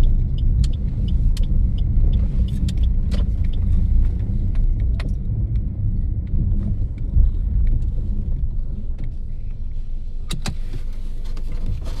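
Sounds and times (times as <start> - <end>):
light ticks and creaks: 0.0 - 7.9
car interior hum and rumble: 0.0 - 12.0.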